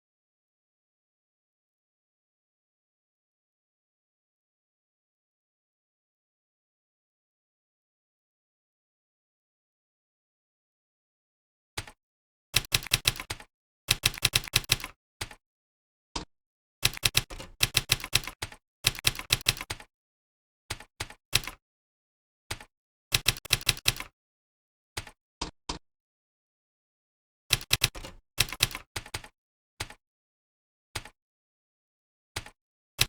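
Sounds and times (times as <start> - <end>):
keyboard key clicks: 12.6 - 15.4, 16.2 - 19.9, 20.7 - 21.6, 22.5 - 24.1, 27.5 - 30.0.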